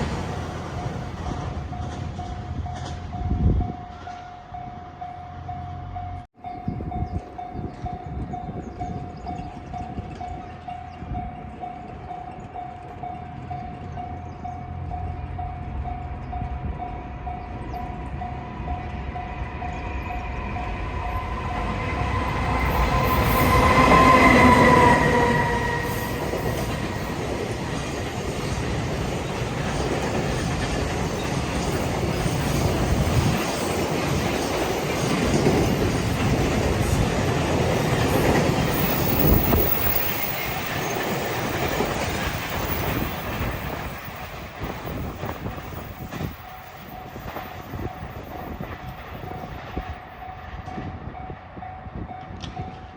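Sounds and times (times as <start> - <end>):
train wheels clattering over rails: 0.0 - 4.3, 21.6 - 51.0
level crossing warning bell: 45.8 - 52.9.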